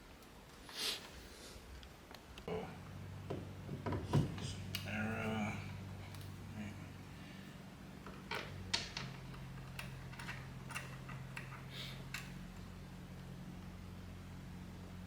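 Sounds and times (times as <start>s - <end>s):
steady low hum: 0.0s - 15.0s
tools clicking and knocking: 8.0s - 12.4s.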